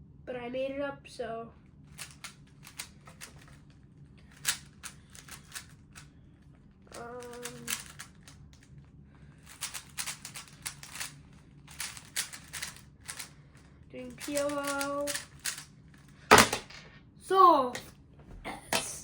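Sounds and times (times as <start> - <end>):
plastic puzzle cube clicking: 2.0 - 3.6, 4.3 - 5.7, 6.9 - 8.4, 9.5 - 13.3, 14.1 - 15.6.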